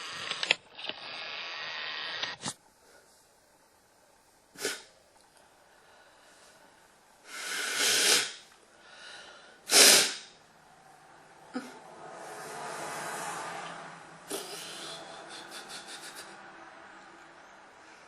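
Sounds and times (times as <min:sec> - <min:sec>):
breathy hiss: 0:04.4 - 0:10.4
person breathing sharply: 0:07.2 - 0:10.4, 0:14.3 - 0:15.5
person sneezing: 0:09.7 - 0:10.3, 0:14.3 - 0:15.4.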